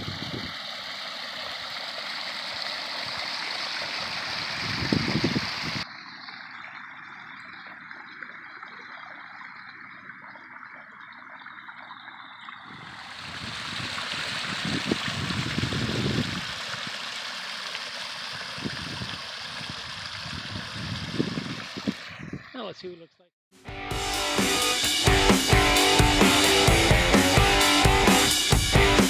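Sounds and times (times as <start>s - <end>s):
waterfall splashing over rocks: 0.0s - 5.8s, 12.9s - 22.0s.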